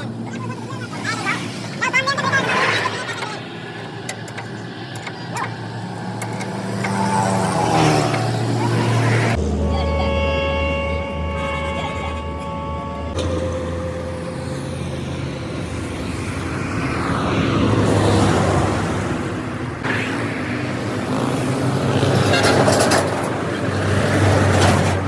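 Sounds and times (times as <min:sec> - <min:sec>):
heavy vehicle engine hum: 0:00.0 - 0:25.0
traffic noise: 0:00.0 - 0:25.0
steady pitched tone: 0:08.7 - 0:16.9.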